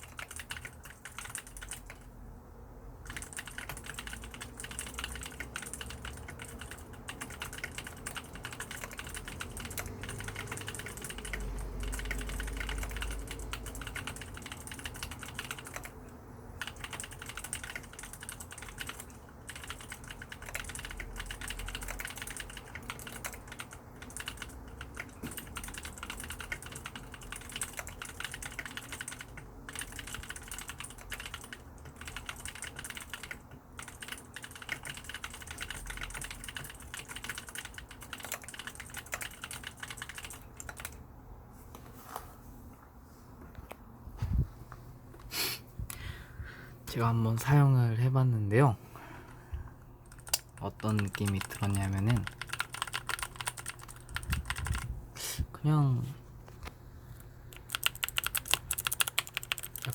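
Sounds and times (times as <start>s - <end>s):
mechanical keyboard key clicks: 57.5s - 59.9s.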